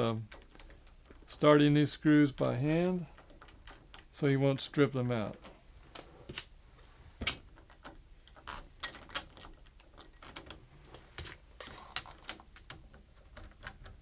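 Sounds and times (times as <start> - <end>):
metal clicks of screws turning: 11.2 - 14.0.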